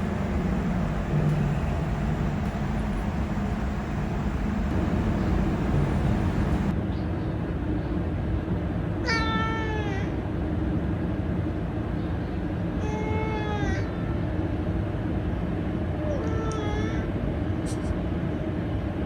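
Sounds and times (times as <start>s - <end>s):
low background noise: 0.0s - 6.8s
cat meow: 9.0s - 10.1s.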